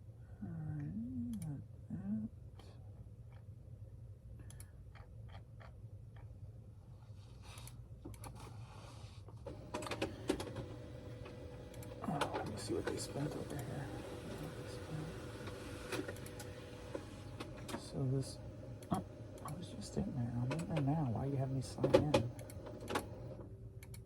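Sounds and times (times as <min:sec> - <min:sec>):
steady low hum: 0:09.5 - 0:23.9.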